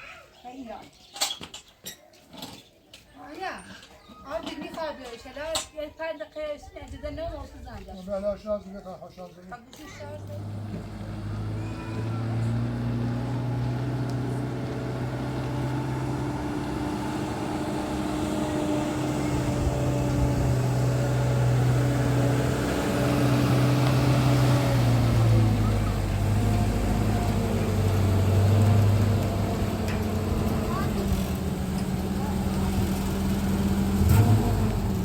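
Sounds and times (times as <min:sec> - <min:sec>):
road noise: 0:08.3 - 0:35.0
vehicle engine hum: 0:09.9 - 0:35.0.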